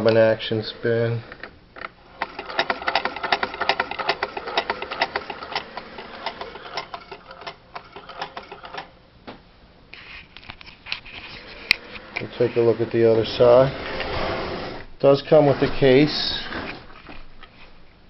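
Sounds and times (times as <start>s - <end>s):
hand-crank sewing machine clicking: 1.2s - 8.9s.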